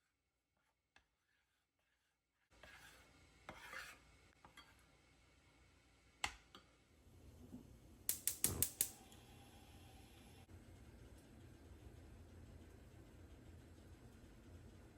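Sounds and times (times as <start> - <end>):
utensil scraping dish: 2.5 - 4.8
utensil click: 8.1 - 9.0.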